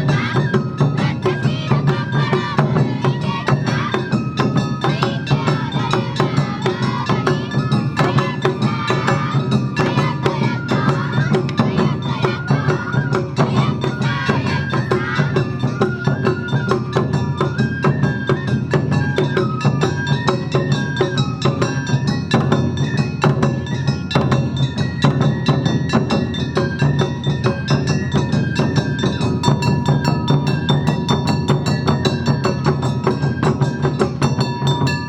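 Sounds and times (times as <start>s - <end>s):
fast drum beat: 0.0s - 16.0s
bamboo flutes melody: 0.0s - 35.0s
small metal gong: 20.5s - 35.0s.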